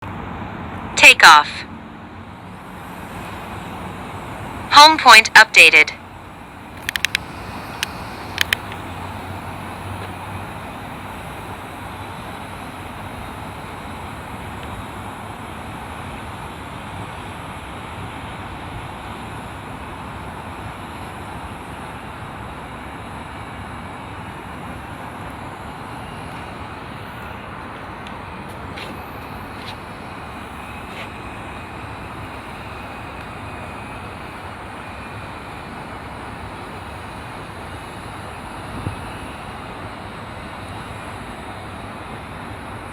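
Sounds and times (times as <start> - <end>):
distant traffic hum: 0.0 - 42.9
wind against microphone: 38.6 - 39.2.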